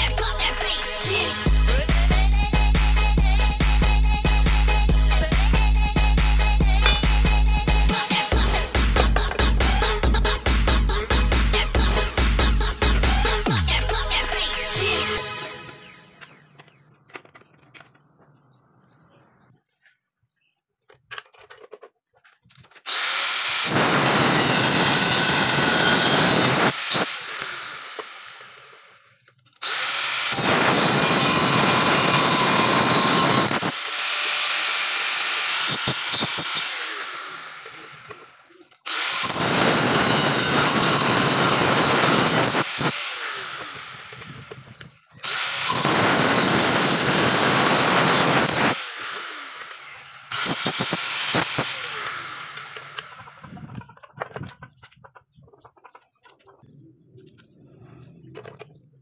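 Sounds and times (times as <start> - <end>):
power tool motor running: 2.3 - 13.6, 22.8 - 53.6.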